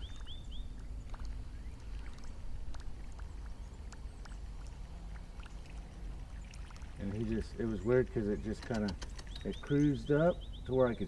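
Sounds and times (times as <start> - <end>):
water lapping around boat: 0.0 - 10.6
bird chirping: 0.0 - 11.0
steady low rumble: 0.0 - 11.0
faint ticks: 1.1 - 5.9, 8.4 - 9.5.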